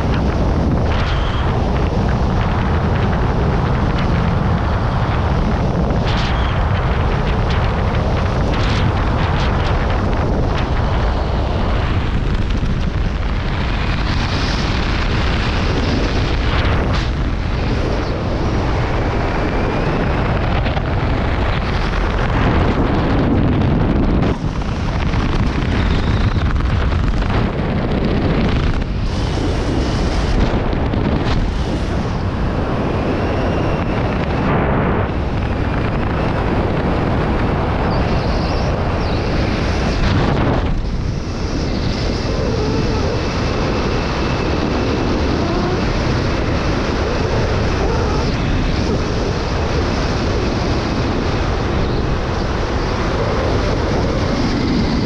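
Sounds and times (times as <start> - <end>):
wind buffeting microphone: 0.0 - 55.0.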